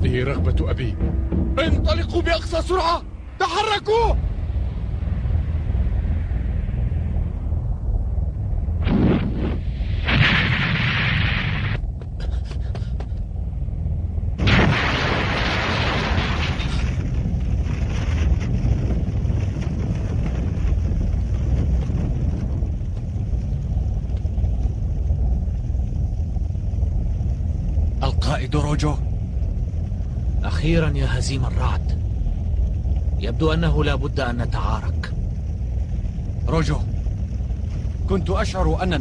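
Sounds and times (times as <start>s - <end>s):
deep rumble: 0.0s - 39.0s
explosion blasts: 8.7s - 11.8s, 14.4s - 20.6s.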